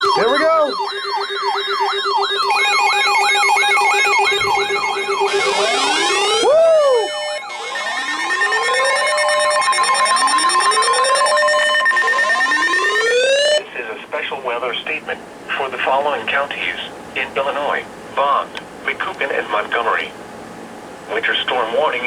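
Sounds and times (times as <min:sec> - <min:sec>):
electronic sirens yelping: 0:00.0 - 0:13.6
steady alarm tones: 0:00.0 - 0:20.4.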